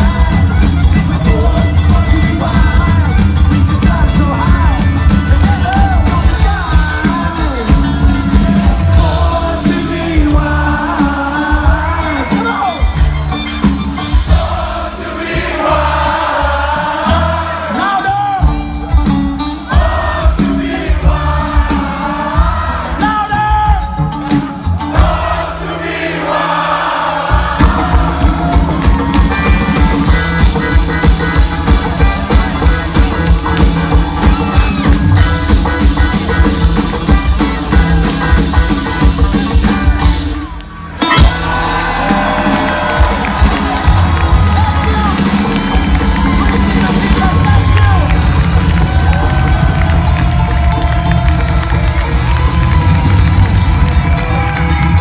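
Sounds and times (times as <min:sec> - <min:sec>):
person singing: 0:00.0 - 0:13.0
live bluegrass band playing: 0:00.0 - 0:55.0.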